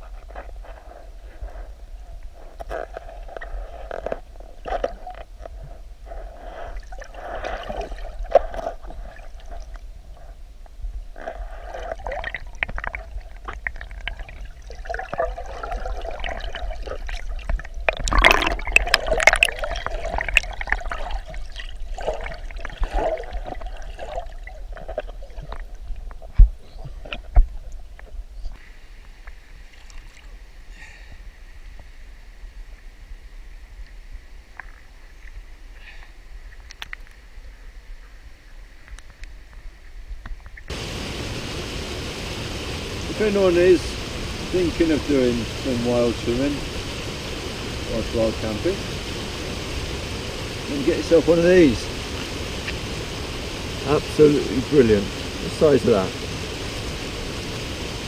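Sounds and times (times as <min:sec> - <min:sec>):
running water hiss: 0:00.0 - 0:38.0, 0:40.7 - 0:58.0
water splashing and gurgling: 0:02.6 - 0:10.2, 0:11.2 - 0:27.7, 0:40.7 - 0:58.0.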